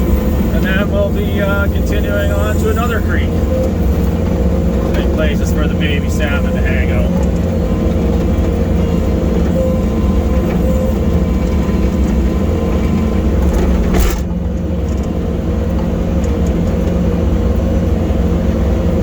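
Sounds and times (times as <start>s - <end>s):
skid steer diesel engine running: 0.0s - 19.0s
machine clunk: 13.4s - 14.4s.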